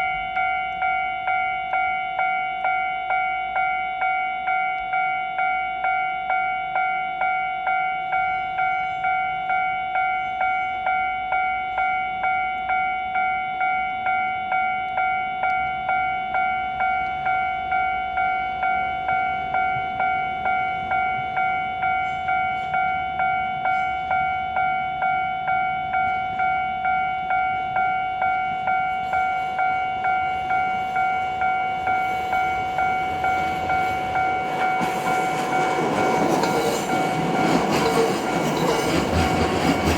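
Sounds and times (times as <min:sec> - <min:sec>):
level crossing alarm ringing: 0:00.0 - 0:39.9
train running: 0:15.5 - 0:39.9.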